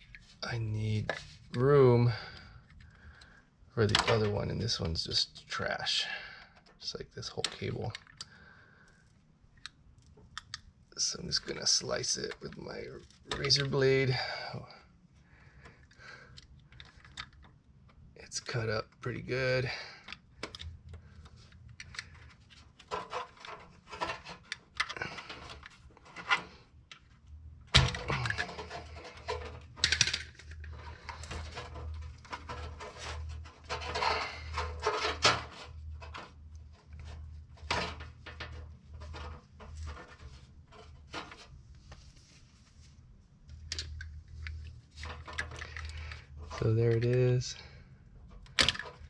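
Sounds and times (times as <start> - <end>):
low steady hum: 0.0 - 49.0
hands working rubber grommet: 15.1 - 47.5.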